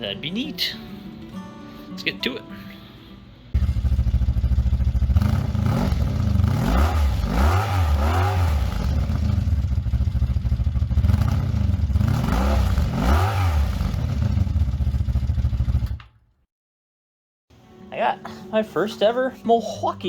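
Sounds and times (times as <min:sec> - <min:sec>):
engine idling and revving: 0:03.6 - 0:16.1.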